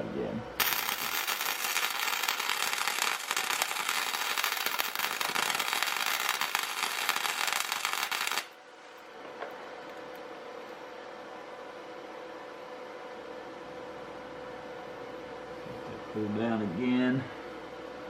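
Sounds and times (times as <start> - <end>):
arc welder crackling: 0.6 - 8.6.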